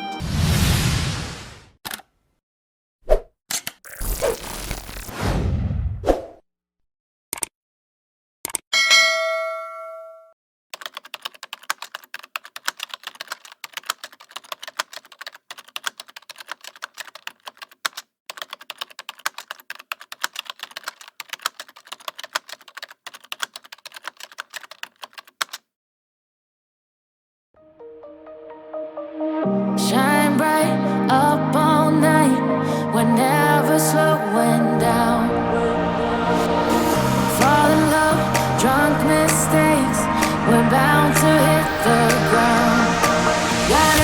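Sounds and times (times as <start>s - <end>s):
bell ding: 8.7s - 10.4s
rapid keyboard typing clicks: 10.8s - 25.6s.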